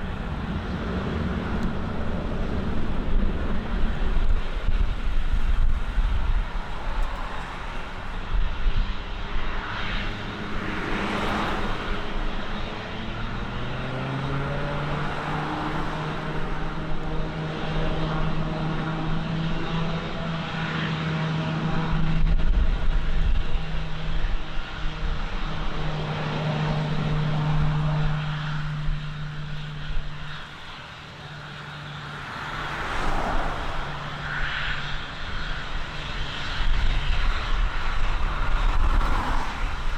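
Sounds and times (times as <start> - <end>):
plane engines passing: 0.0 - 39.9
wind rumbling on microphone: 0.0 - 39.9.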